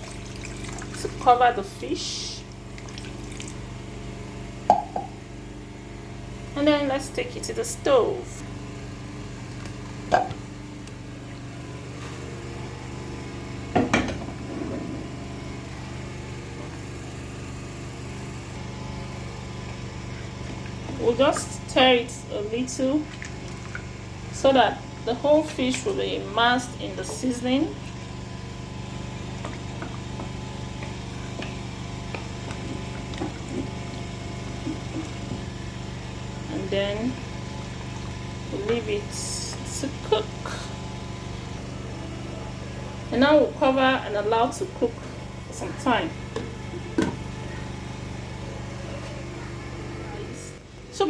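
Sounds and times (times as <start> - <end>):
small liquid sounds: 0.0 - 1.2, 2.5 - 3.6, 23.0 - 24.0
low motor hum: 0.0 - 51.0.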